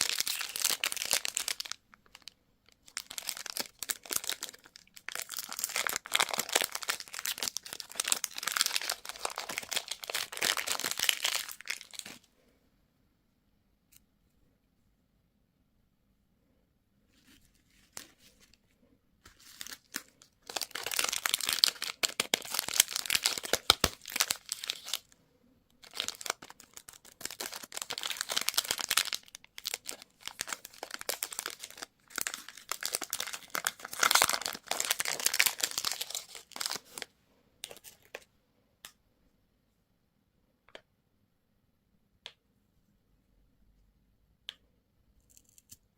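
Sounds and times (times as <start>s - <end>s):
candy wrapper crinkling: 0.0s - 12.2s, 19.2s - 25.2s, 25.8s - 38.3s.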